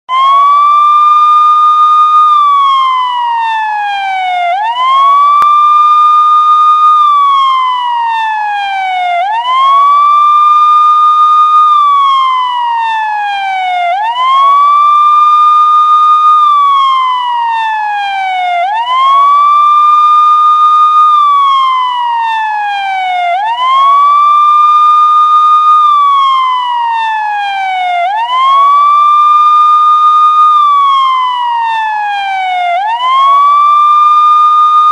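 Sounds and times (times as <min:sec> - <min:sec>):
police siren wailing: 0:00.1 - 0:34.9.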